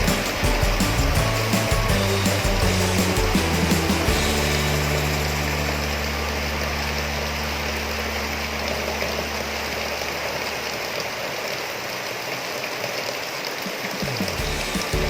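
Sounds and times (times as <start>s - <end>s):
low steady hum: 0.0s - 11.7s.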